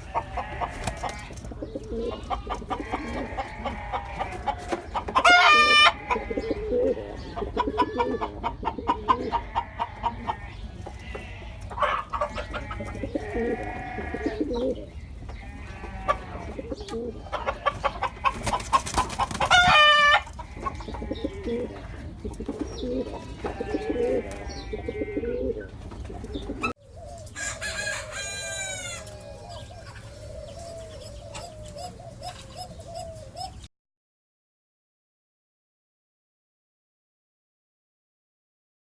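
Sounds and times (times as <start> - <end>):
pigeons cooing: 5.3 - 9.4, 12.8 - 14.9, 21.0 - 21.7, 26.3 - 33.7.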